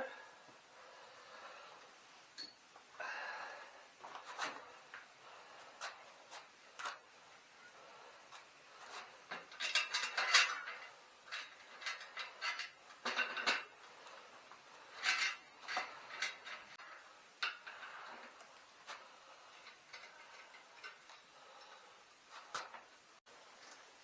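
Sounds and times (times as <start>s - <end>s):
metal tools clinking and rattling: 2.4s - 2.6s, 8.9s - 13.7s, 14.9s - 16.8s.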